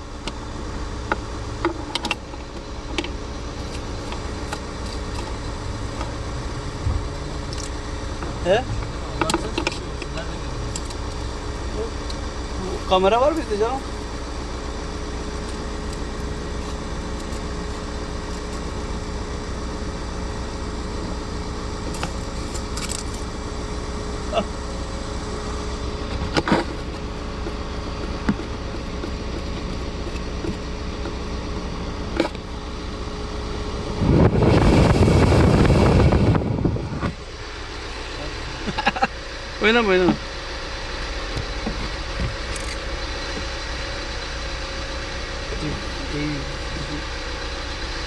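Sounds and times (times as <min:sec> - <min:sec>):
car engine humming: 0:00.0 - 0:48.0
loud rush of air: 0:33.7 - 0:38.1.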